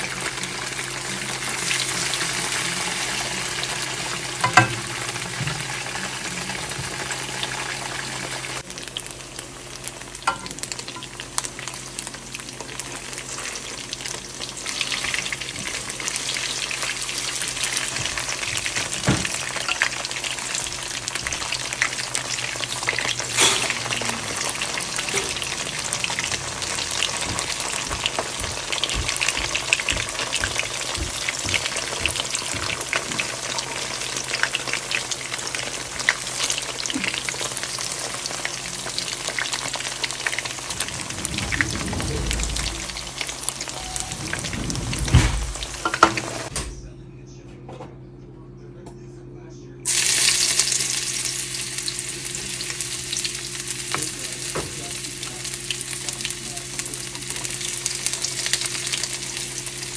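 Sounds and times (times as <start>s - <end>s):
food sizzling in a frying pan: 0.0s - 46.5s, 49.9s - 59.9s
utensil knocking on a pan: 4.4s - 5.6s, 10.3s - 10.6s.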